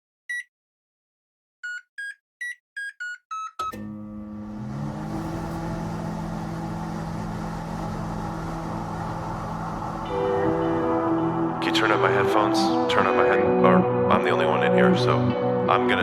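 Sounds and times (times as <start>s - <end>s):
electronic keypad beeps: 1.6s - 3.8s
microwave humming: 3.7s - 11.4s.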